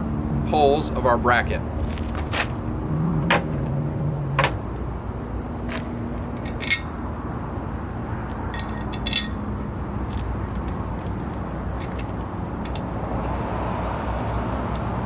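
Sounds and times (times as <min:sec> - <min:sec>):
metal hardware clinking: 0:06.4 - 0:07.0, 0:08.5 - 0:09.5, 0:11.7 - 0:12.9.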